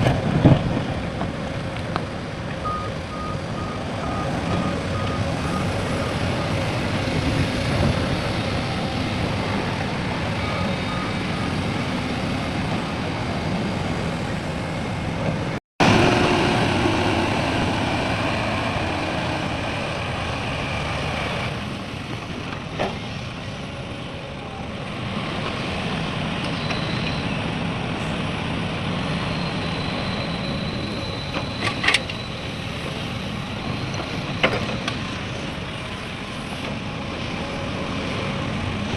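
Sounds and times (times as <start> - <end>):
reversing beeper: 10.3 - 11.8
heavy machinery running: 15.8 - 23.6.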